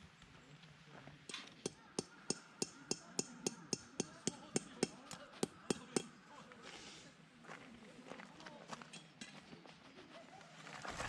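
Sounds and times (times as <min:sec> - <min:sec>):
hammer striking metal: 0:01.3 - 0:06.1.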